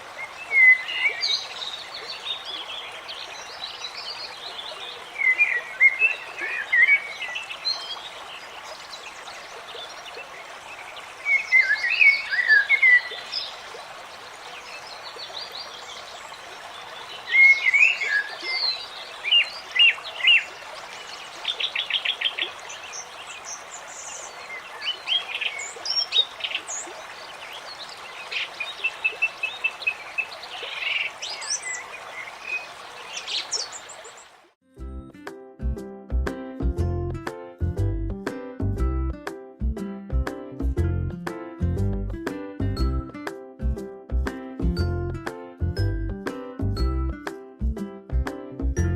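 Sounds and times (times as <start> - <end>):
running water: 0.0 - 34.6
birds chirping and singing: 0.4 - 8.5, 9.2 - 13.6, 17.0 - 20.6, 21.3 - 34.3.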